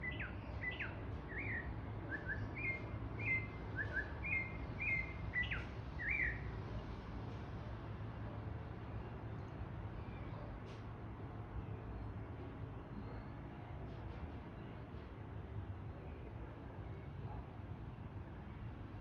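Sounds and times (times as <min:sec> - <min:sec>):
bird whistling song: 0:00.0 - 0:06.5.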